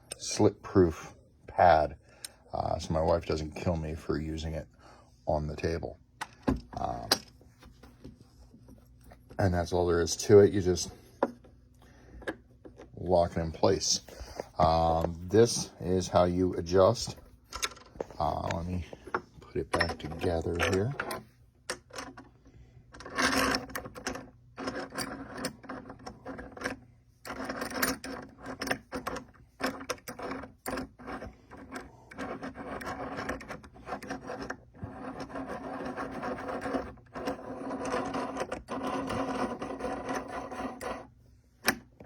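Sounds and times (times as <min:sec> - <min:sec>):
metal parts clicking and knocking: 0:17.5 - 0:22.3, 0:22.9 - 0:41.0
metal pieces scraping and rubbing: 0:23.0 - 0:41.1.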